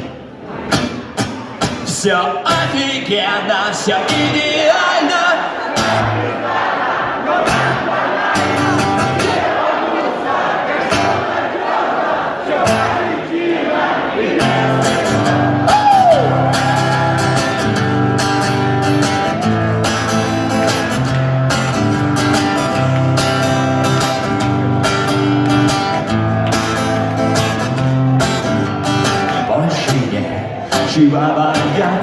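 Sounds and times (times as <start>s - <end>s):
bass guitar: 14.4s - 29.5s
electric guitar: 14.4s - 32.0s.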